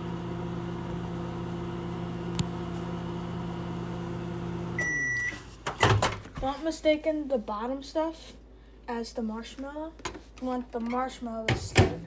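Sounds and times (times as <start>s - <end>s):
microwave beep: 0.0s - 5.5s
microwave oven humming: 0.0s - 6.0s.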